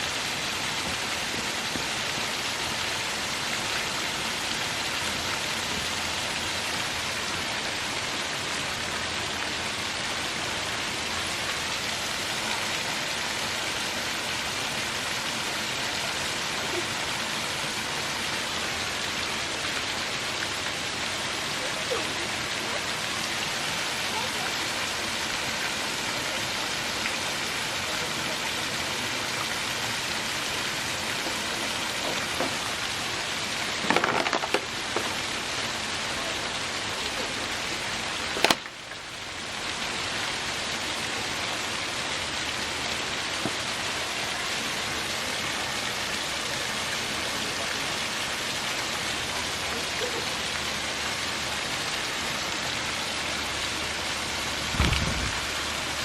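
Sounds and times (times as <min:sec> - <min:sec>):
falling water hiss: 0:00.0 - 0:56.0
sharp crack: 0:38.3 - 0:38.9.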